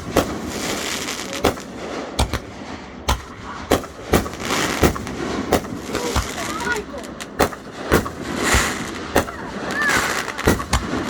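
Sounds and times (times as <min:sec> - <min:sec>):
firework bangs: 0:00.0 - 0:11.0.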